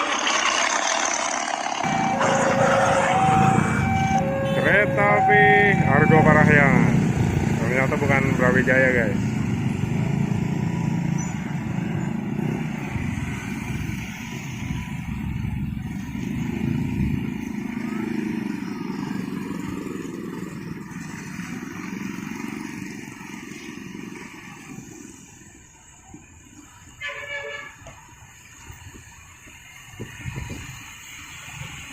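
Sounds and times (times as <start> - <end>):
low rumble of passing vehicles: 0.0 - 31.9.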